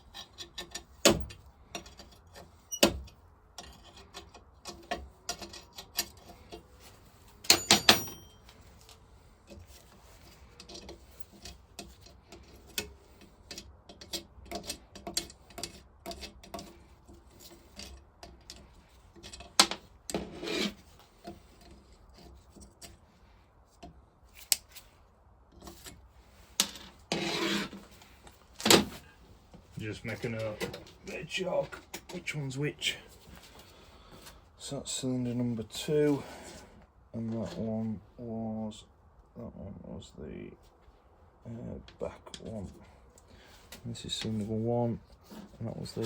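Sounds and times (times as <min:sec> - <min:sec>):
metal parts rubbing and scraping: 0:03.6 - 0:23.2, 0:25.6 - 0:32.0
small metallic clicks and clinks: 0:07.4 - 0:09.6
ringing metallic clang: 0:07.5 - 0:08.5.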